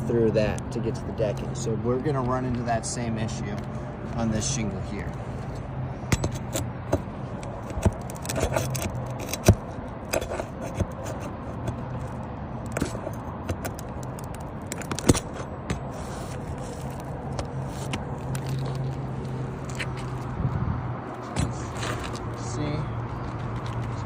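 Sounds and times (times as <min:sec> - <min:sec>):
roof shingles scraping: 0:15.4 - 0:19.0.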